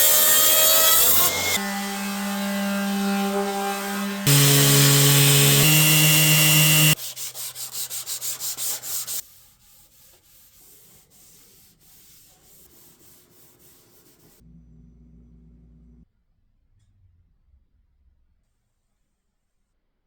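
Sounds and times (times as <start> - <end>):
power sander humming: 1.2 - 7.0
rhythmic rubbing strokes on wood: 4.3 - 14.4.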